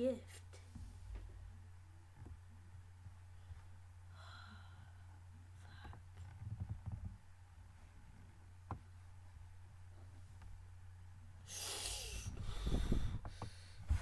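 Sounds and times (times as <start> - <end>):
low steady hum: 0.0 - 14.0
faint breath: 3.4 - 6.0, 11.5 - 14.0.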